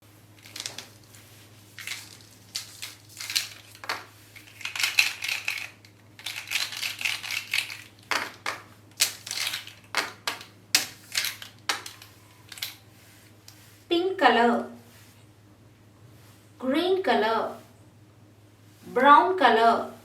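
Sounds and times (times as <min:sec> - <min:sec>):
scratchy strokes and rustles: 0:00.0 - 0:07.9, 0:12.0 - 0:14.0, 0:14.7 - 0:15.3, 0:16.0 - 0:16.6
low electrical hum: 0:00.0 - 0:20.0.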